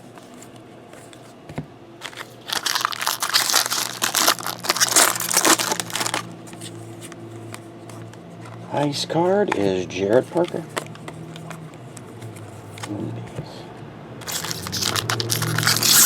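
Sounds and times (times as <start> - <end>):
foil wrapper crinkling: 2.0 - 6.3, 14.2 - 16.0.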